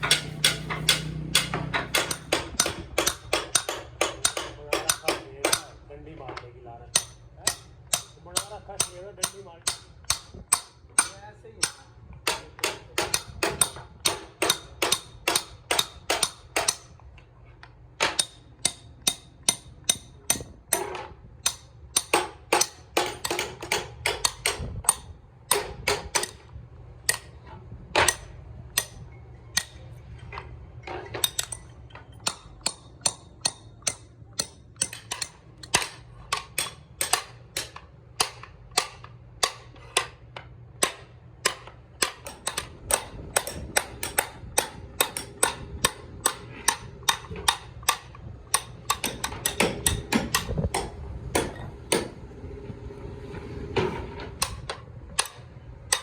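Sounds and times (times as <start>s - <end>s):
hammer tapping on wood: 0.0s - 5.7s, 18.0s - 26.4s, 40.8s - 48.0s, 48.6s - 52.1s.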